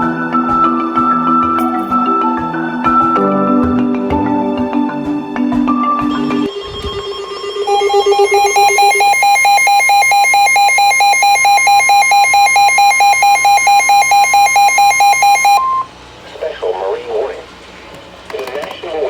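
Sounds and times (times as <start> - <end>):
steady high alert tone: 7.0 - 15.8
fast electronic beeps: 7.7 - 15.8.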